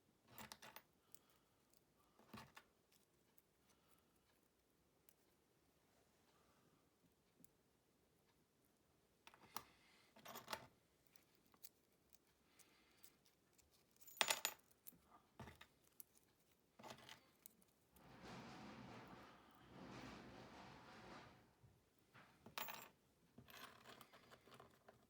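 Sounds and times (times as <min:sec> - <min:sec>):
soft noise: 0:18.0 - 0:22.5.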